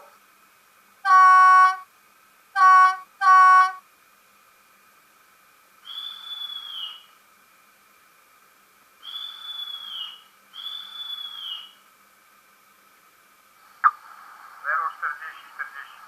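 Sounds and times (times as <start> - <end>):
high whistle-like warning blasts: 5.8 - 7.0, 9.0 - 11.7.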